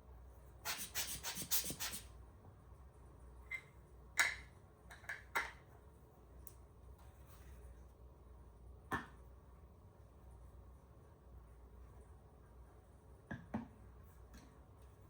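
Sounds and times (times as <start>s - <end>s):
cloth rubbing strokes: 0.7s - 2.0s.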